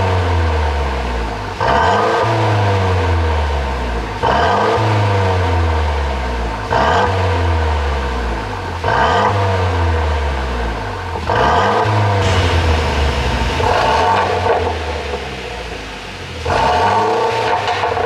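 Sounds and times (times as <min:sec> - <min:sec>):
car engine revving: 0:11.0 - 0:17.5.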